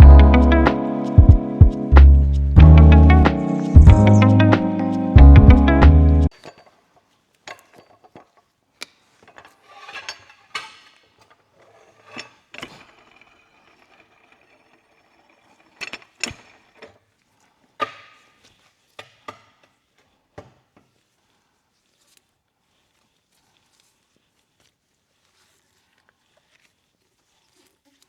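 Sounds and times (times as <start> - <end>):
hand tools knocking and clinking: 6.3 - 14.9.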